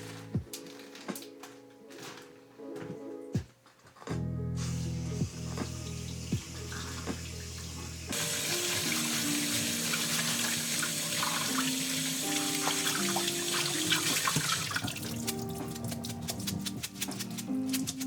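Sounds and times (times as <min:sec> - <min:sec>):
background music: 0:00.0 - 0:18.0
tap water running into sink: 0:05.2 - 0:16.6.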